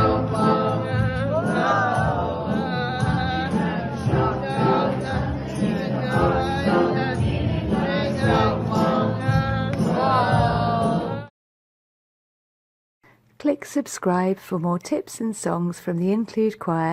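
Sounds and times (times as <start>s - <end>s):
choir singing with instruments: 0.0s - 11.3s.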